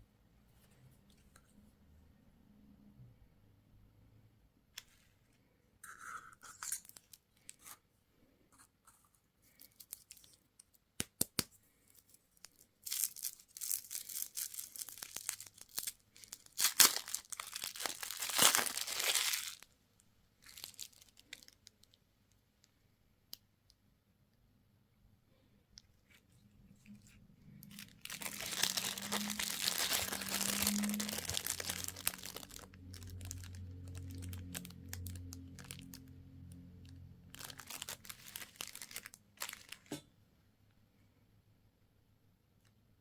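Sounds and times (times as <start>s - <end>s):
candy wrapper crinkling: 5.8s - 7.8s, 8.8s - 19.7s, 20.4s - 22.7s, 25.9s - 39.9s
wrapper tearing: 5.9s - 7.7s, 11.9s - 19.7s, 20.4s - 22.0s, 26.9s - 39.9s
wrapper clicks: 9.5s - 19.6s, 27.6s - 36.1s, 37.3s - 40.0s.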